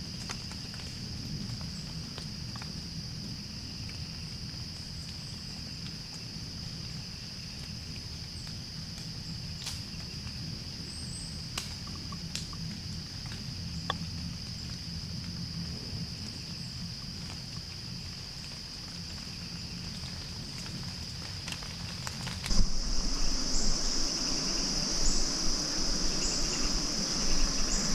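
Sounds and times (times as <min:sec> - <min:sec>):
footsteps crunching in woodland: 0:00.0 - 0:23.1
twigs snapping: 0:11.4 - 0:14.0, 0:17.2 - 0:22.6
high-pitched drone: 0:22.5 - 0:27.9.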